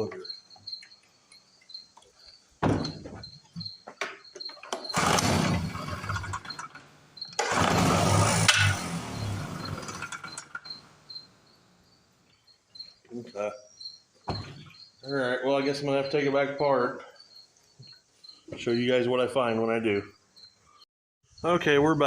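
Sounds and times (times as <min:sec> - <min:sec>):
crickets chirping: 0:00.0 - 0:07.6, 0:08.2 - 0:22.0
generator engine pull-started: 0:04.6 - 0:10.9.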